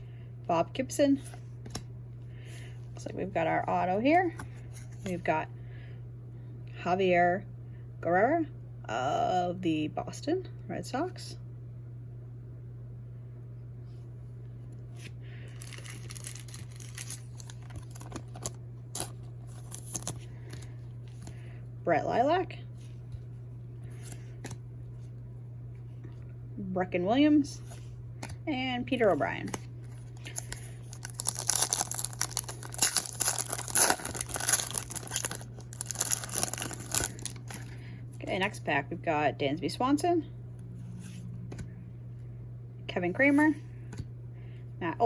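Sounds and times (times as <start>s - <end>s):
low electrical hum: 0.0s - 45.0s
cards rustling and sliding: 1.3s - 1.8s, 14.9s - 21.4s, 23.8s - 24.6s, 27.7s - 37.7s
plastic wrapper tearing and crinkling: 15.6s - 21.3s, 30.0s - 37.7s.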